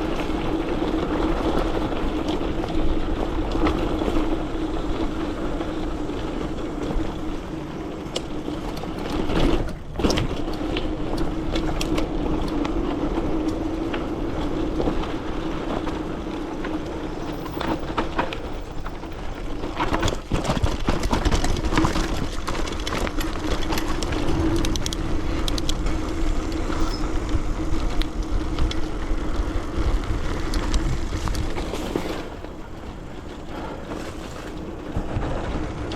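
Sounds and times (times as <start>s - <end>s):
bike rattles and clicks: 0.0s - 35.9s
bike rolling on trail: 0.0s - 35.9s
low hum: 20.9s - 35.9s.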